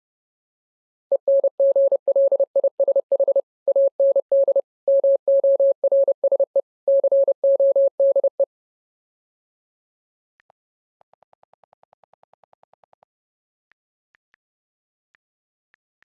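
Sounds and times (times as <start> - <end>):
morse code beeps: 1.1 - 8.5.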